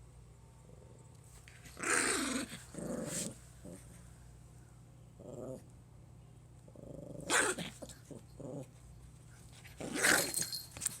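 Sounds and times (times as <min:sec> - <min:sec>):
puppy growling: 0:01.8 - 0:03.9, 0:05.2 - 0:05.7, 0:06.7 - 0:08.8.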